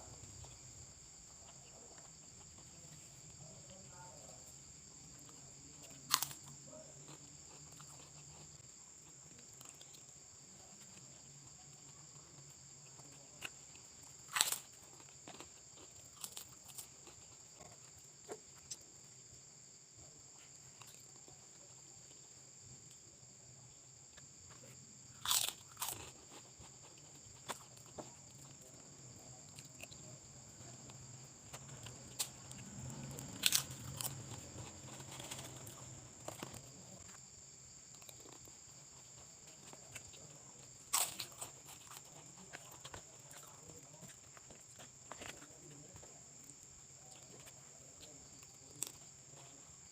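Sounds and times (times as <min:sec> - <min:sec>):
quiet chewing: 0:00.0 - 0:49.9
crisp crunches: 0:25.2 - 0:26.3, 0:31.8 - 0:36.8.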